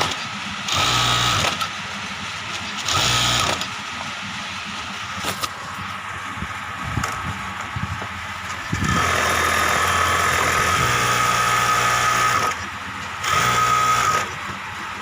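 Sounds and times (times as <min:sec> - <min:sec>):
industrial sewing machine whining: 0:00.0 - 0:01.8, 0:02.8 - 0:03.7, 0:08.7 - 0:14.6.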